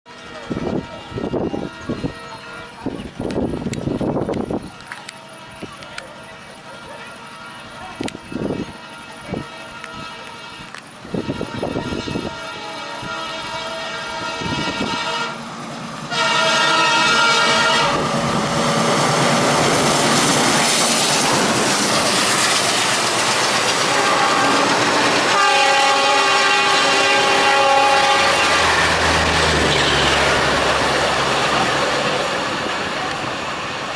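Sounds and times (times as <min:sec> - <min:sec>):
locomotive air horn blasts: 0:00.1 - 0:03.0, 0:04.8 - 0:15.5, 0:16.1 - 0:18.3, 0:21.0 - 0:31.8
rush of passing train: 0:00.1 - 0:33.9.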